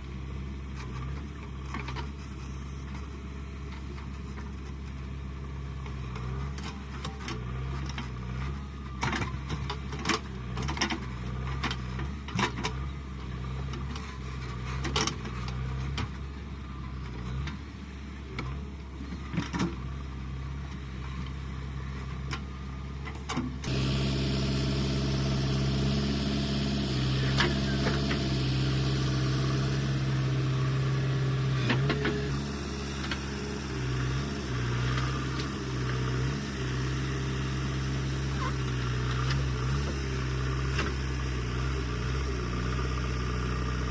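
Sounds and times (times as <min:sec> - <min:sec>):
diesel engine running: 0:20.0 - 0:43.9.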